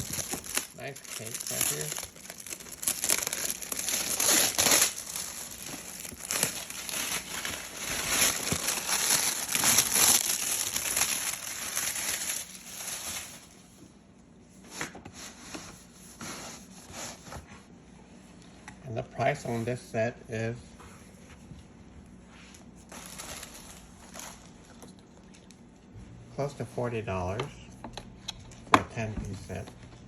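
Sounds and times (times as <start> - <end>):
plastic packaging crinkling: 0.0 - 13.6, 22.8 - 25.7.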